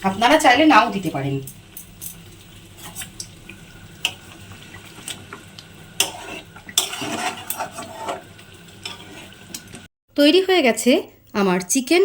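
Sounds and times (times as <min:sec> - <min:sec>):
spoon scraping pot: 0:05.9 - 0:09.7.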